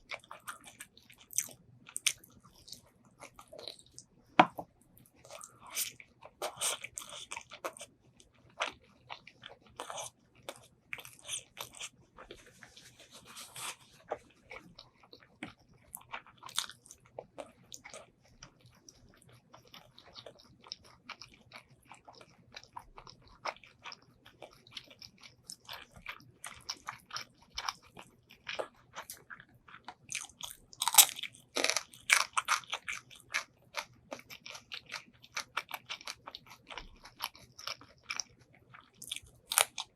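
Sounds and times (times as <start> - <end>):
person chewing food: 0.0 - 39.9
crunchy bites: 30.1 - 38.2.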